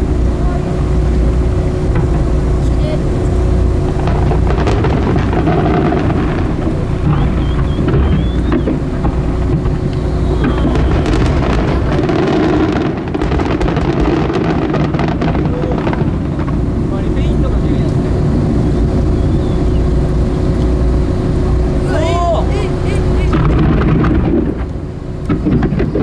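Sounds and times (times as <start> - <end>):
fireworks cracking and banging: 0.0 - 19.2, 21.7 - 26.0
boat engine rumble: 0.0 - 26.0
wind on microphone: 0.0 - 26.0
fireworks whistling: 4.0 - 16.5, 25.4 - 26.0.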